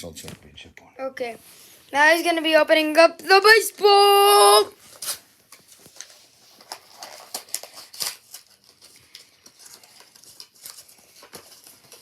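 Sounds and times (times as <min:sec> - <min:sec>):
wrapper crinkling and tearing: 0:04.8 - 0:12.0.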